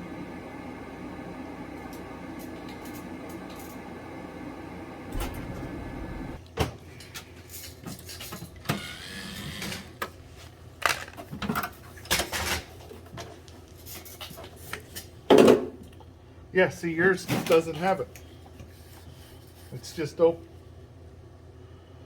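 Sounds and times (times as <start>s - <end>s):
oil burner humming: 0.0s - 7.2s.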